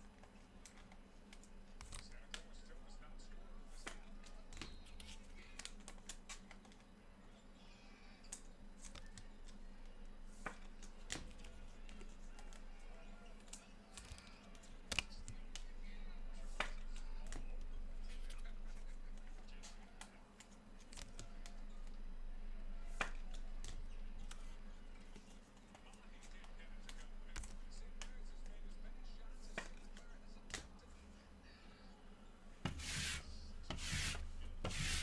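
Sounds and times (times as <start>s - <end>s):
sharp clicks and taps of cards: 0.1s - 2.5s, 3.8s - 6.8s, 10.4s - 12.6s, 13.4s - 15.7s, 23.0s - 28.5s, 29.5s - 30.8s
low steady hum: 7.1s - 35.0s.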